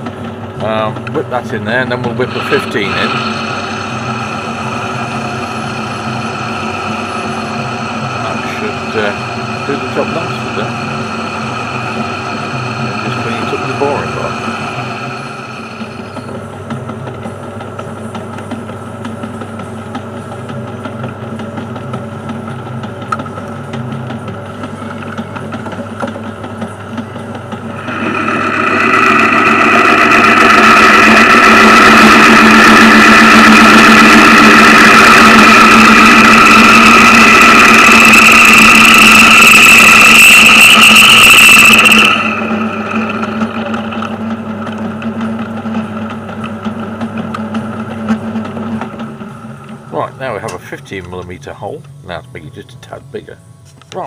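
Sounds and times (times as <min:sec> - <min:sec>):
metal lathe humming: 0:00.0 - 0:53.3
ringing metal cutting noise: 0:01.1 - 0:16.4, 0:27.7 - 0:45.0.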